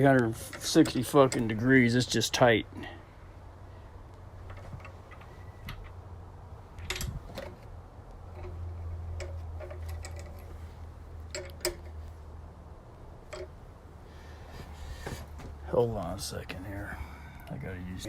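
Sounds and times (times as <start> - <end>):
low steady hum: 0.0 - 18.0
bench vise metal clicks and knocks: 6.8 - 7.7, 8.3 - 10.5, 11.3 - 12.0, 13.3 - 13.6.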